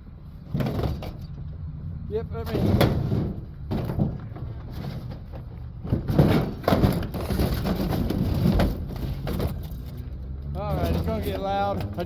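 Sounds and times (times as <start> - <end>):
metal parts knocking and clanking: 2.4 - 9.9.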